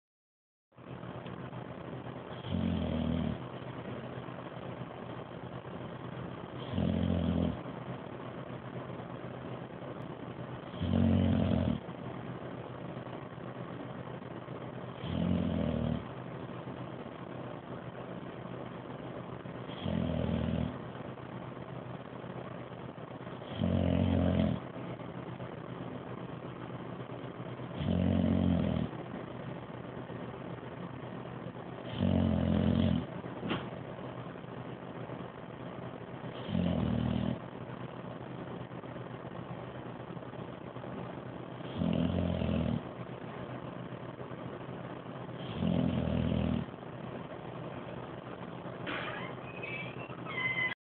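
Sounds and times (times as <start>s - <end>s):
dog snoring: 2.3s - 3.6s, 6.6s - 7.6s, 10.6s - 11.9s, 14.9s - 16.1s, 19.7s - 20.8s, 23.4s - 24.7s, 27.7s - 29.0s, 31.8s - 33.2s, 36.3s - 37.4s, 41.6s - 42.9s, 45.3s - 46.7s.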